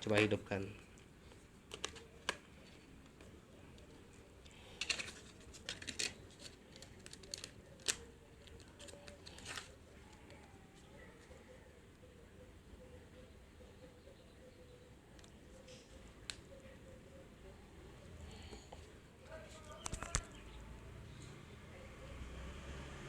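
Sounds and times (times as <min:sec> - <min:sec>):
plastic clicks of smartphone handling: 0:01.0 - 0:10.6, 0:19.6 - 0:20.4.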